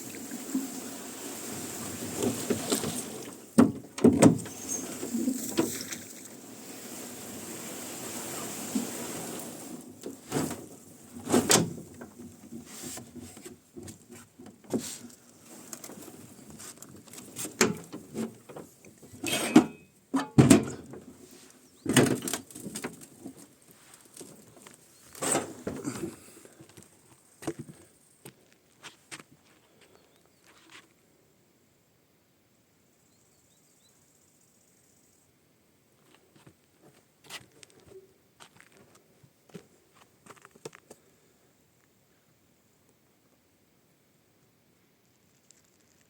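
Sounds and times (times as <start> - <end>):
water swishing: 0.0 - 3.6, 4.5 - 9.9
oars knocking and creaking: 1.5 - 6.4, 8.3 - 28.4.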